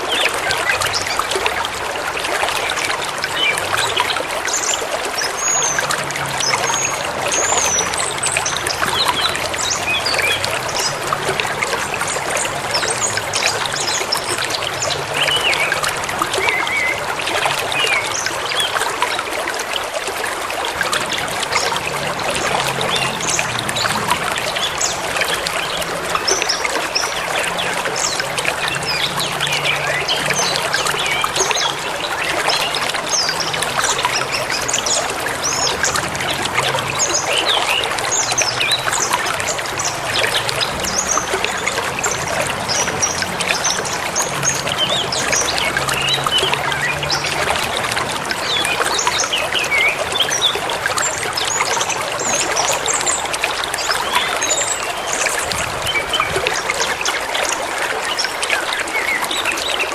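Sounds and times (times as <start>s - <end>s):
river flowing: 0.0s - 59.9s.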